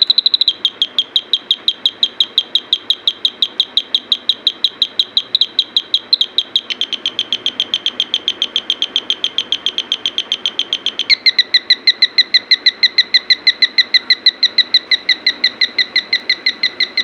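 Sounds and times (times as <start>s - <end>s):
electronic bird chirps: 0.0s - 17.0s.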